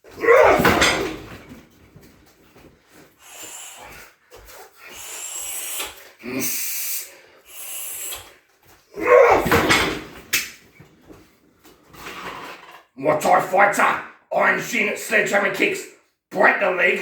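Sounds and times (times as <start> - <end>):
hard hissing breaths: 3.1 - 8.5.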